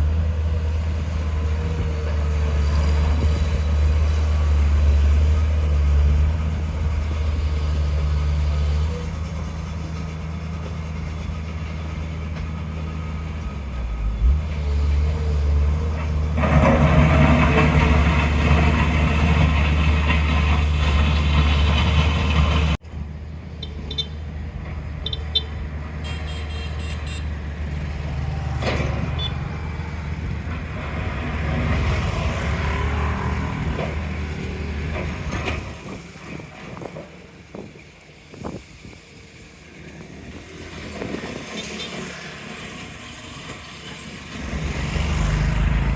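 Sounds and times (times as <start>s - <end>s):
heavy diesel engines running: 0.0s - 45.9s.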